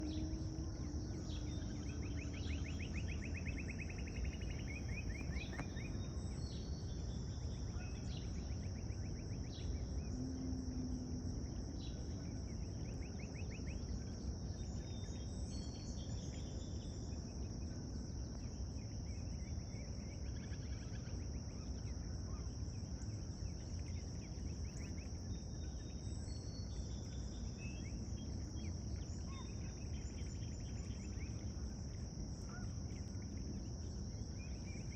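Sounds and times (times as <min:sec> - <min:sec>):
low background rumble: 0:00.0 - 0:20.3
insects droning: 0:00.0 - 0:34.9.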